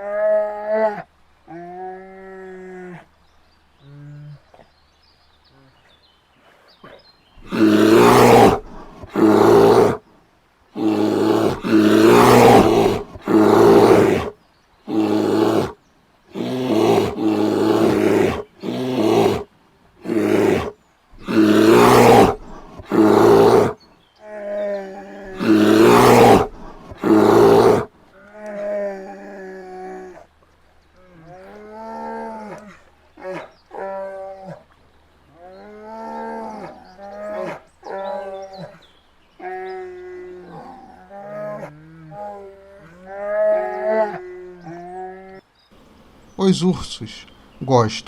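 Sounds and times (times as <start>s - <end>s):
bear roaring: 7.4s - 10.0s, 10.8s - 30.3s.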